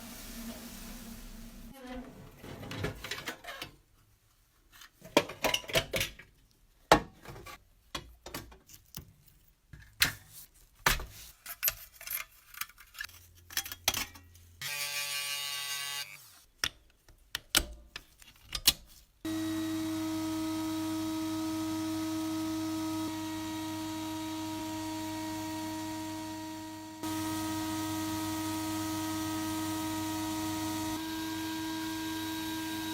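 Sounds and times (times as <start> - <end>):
buzz: 14.6 - 16.3.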